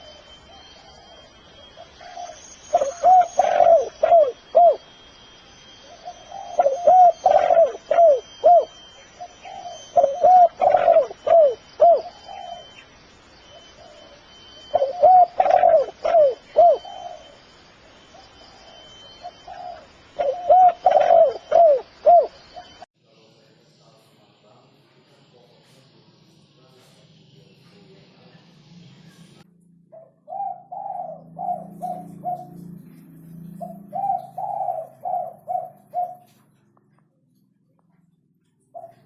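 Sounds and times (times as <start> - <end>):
dove cooing: 0.0 - 5.0, 5.7 - 12.8, 13.4 - 17.5, 18.1 - 22.8, 29.9 - 36.5, 38.7 - 39.0.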